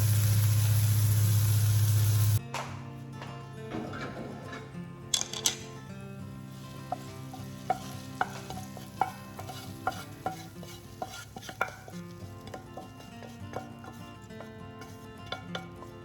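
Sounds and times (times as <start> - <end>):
food sizzling in pan: 0.0 - 2.4, 6.2 - 16.0
utensil clinking against pan: 3.7 - 5.8, 6.7 - 16.0.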